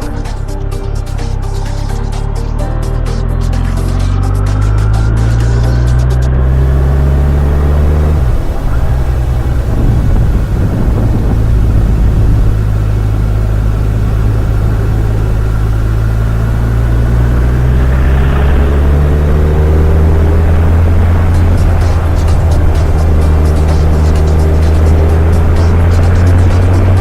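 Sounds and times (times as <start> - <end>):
motorcycle engine and exhaust: 0.0 - 27.0.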